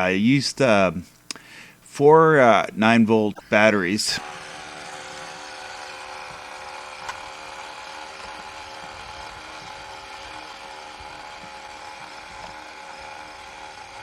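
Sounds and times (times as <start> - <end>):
toy boat motor whining: 4.2 - 14.0.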